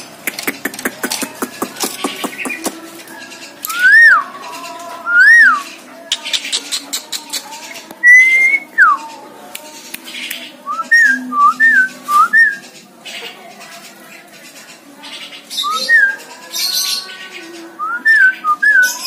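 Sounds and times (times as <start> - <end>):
scratchy clicking bird chatter: 0.0 - 8.1, 8.7 - 11.1, 12.1 - 18.3
bird whistling: 8.0 - 9.0, 10.7 - 12.6.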